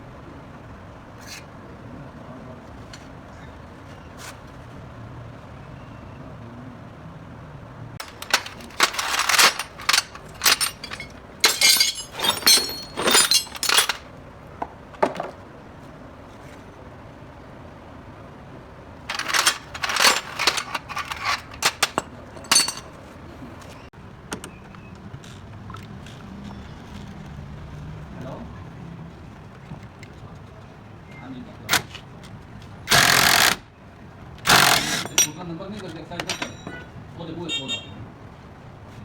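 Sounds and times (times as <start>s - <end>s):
metal tools clinking: 8.0s - 14.1s, 19.1s - 23.8s, 34.5s - 36.9s.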